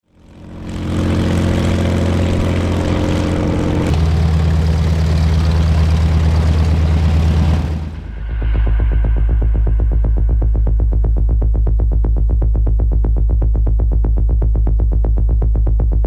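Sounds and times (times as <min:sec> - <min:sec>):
propeller aircraft engine running: 0:00.0 - 0:08.3.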